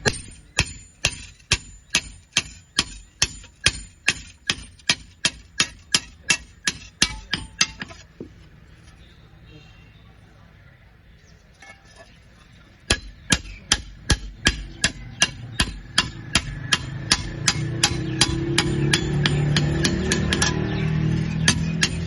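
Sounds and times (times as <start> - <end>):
hammer striking metal: 0.0 - 8.4, 12.8 - 22.0.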